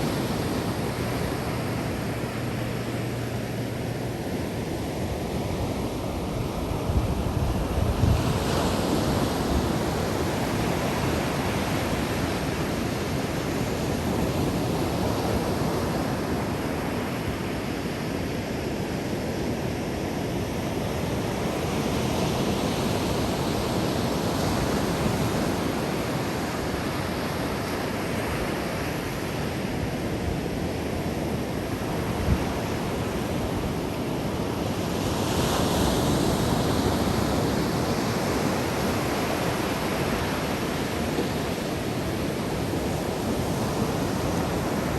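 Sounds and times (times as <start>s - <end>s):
ocean surf breaking on beach: 0.0s - 44.9s
wind buffeting microphone: 4.9s - 12.9s.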